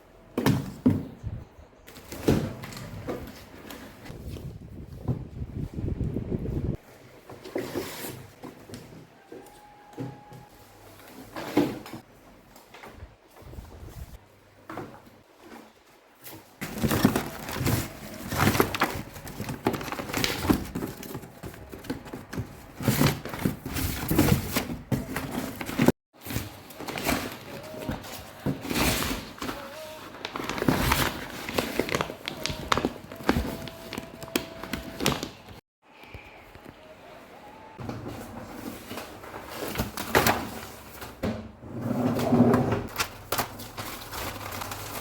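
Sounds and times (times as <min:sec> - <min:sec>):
papers rustling and knocking: 0:07.0 - 0:35.6, 0:37.8 - 0:41.5, 0:42.9 - 0:45.0.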